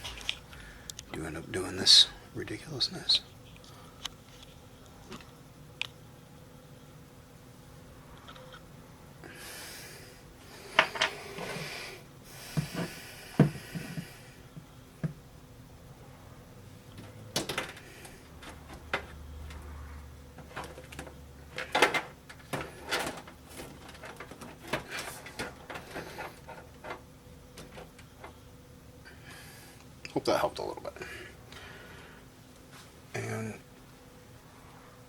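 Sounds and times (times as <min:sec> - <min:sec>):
clicks and knocks of computer parts: 0:17.0 - 0:19.6, 0:20.4 - 0:28.4
scraping inside computer case: 0:20.4 - 0:27.0.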